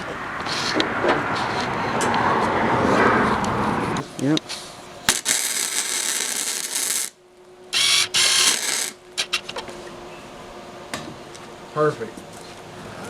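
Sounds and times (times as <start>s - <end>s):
welding arc crackling and hissing: 5.1s - 7.2s, 7.8s - 9.4s.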